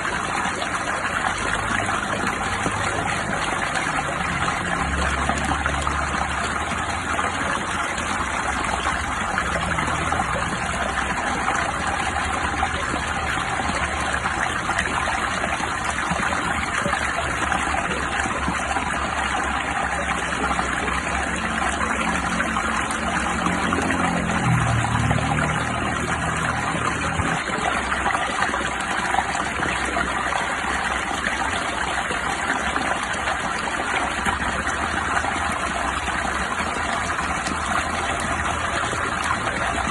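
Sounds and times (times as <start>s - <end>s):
rushing water: 0.0s - 39.9s.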